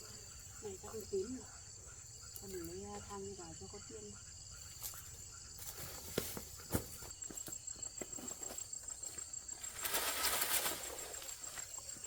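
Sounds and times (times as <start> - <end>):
crickets chirring: 0.0 - 12.0
rustling or scraping: 5.6 - 12.0.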